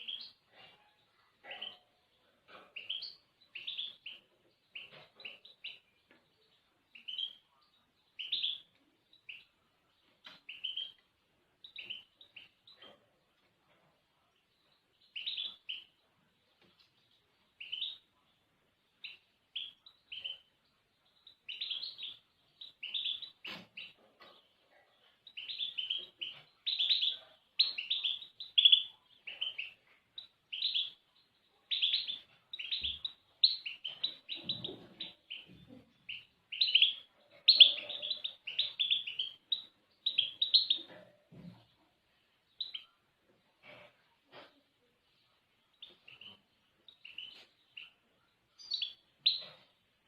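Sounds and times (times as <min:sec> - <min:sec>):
small songbird chirping and twittering: 0:00.0 - 0:50.0.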